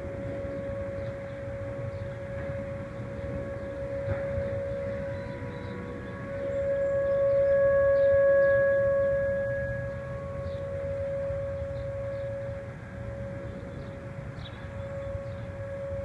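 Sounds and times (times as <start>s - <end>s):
distant warning siren wailing: 0.0s - 16.0s.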